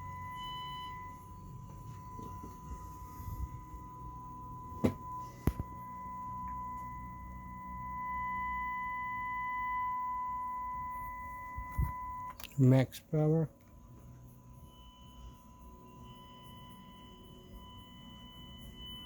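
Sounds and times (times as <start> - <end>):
low hum: 0.0 - 12.5
sine test tone: 0.0 - 19.0.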